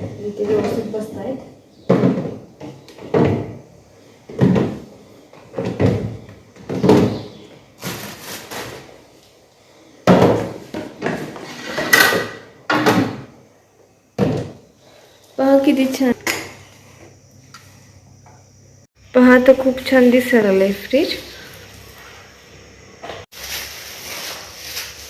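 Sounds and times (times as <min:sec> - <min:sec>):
plastic containers knocking and scraping: 0:00.0 - 0:09.0, 0:10.0 - 0:13.4, 0:14.2 - 0:14.6.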